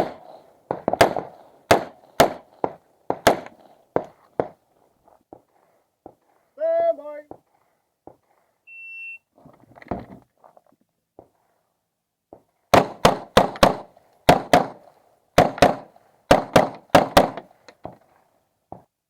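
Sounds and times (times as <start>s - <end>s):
pistol firing double taps: 0.0s - 4.6s.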